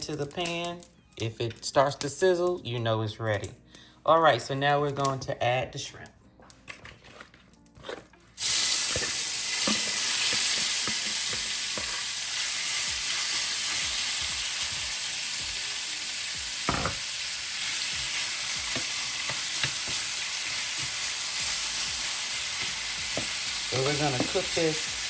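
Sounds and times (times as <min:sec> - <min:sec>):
shrimp sizzling in oil: 0:08.4 - 0:25.0.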